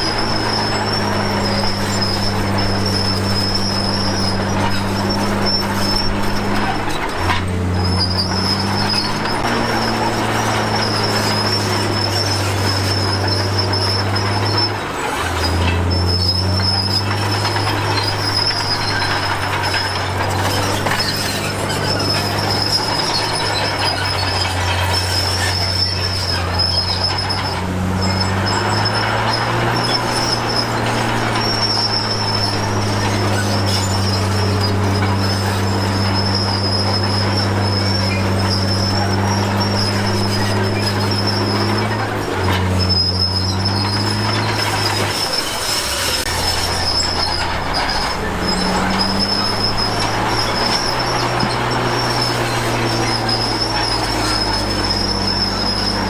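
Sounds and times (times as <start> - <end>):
bulldozer diesel engine: 0.0 - 56.0
high-pitched metallic squeal: 0.0 - 56.0.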